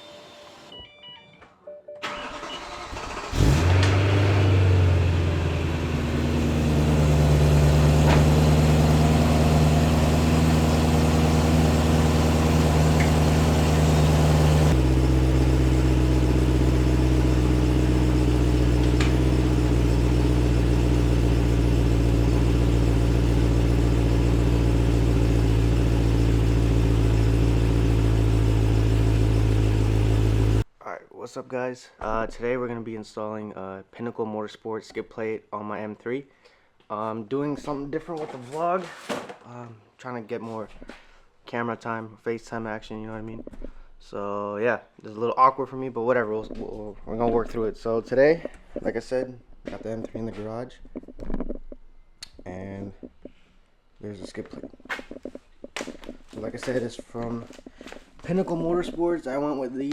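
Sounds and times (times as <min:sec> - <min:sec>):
car engine starting and idling: 0:02.0 - 0:30.7, 0:58.3 - 0:59.9.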